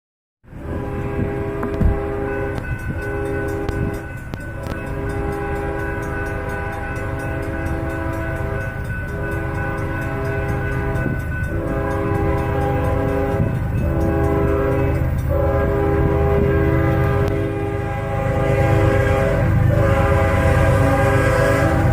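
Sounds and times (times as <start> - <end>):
train rumble: 0.4 - 21.9
locomotive air horn blasts: 0.6 - 21.9.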